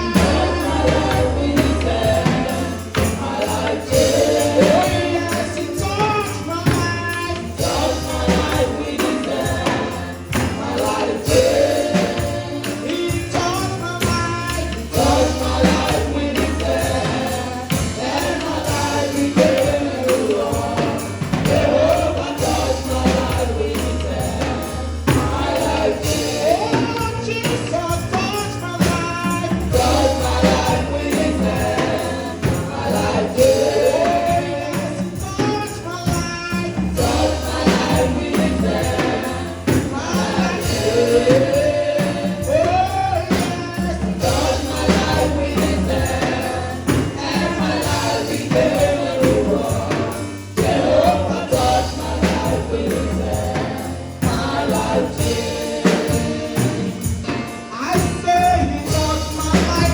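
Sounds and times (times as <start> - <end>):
bass line: 0.0 - 35.9
gospel choir singing: 0.0 - 59.9
tambourine beat: 0.0 - 59.9.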